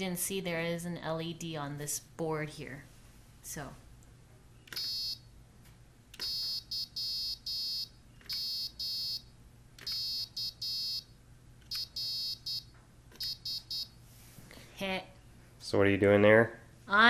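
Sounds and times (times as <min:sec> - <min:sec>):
piezo speaker beeping morse code: 0:04.8 - 0:05.2, 0:06.2 - 0:11.1, 0:11.7 - 0:14.0.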